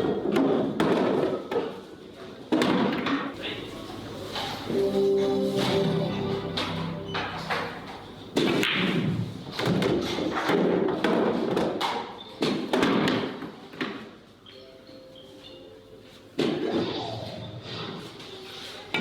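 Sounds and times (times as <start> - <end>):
background music: 4.5 - 9.0.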